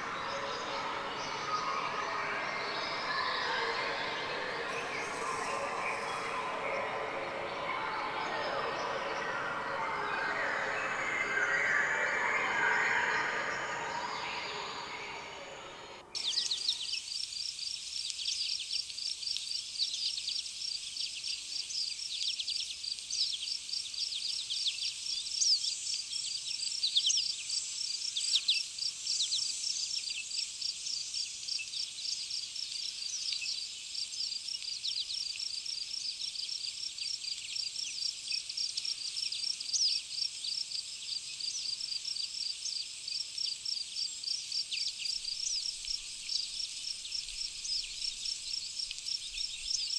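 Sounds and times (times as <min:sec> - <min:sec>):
songbirds chirping: 0:00.0 - 0:17.0.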